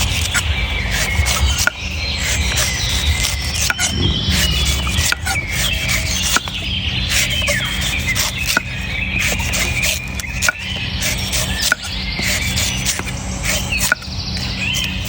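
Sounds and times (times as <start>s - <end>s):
steady low hum: 3.9s - 7.1s.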